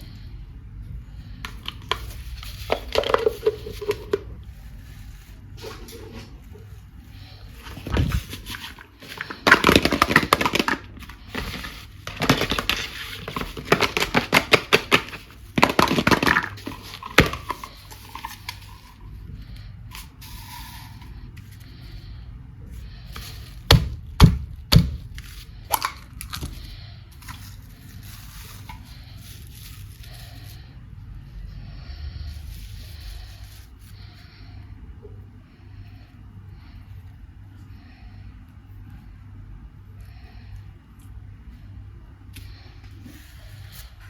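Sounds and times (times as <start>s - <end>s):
plastic packaging crackling: 7.2s - 19.0s, 23.1s - 30.8s.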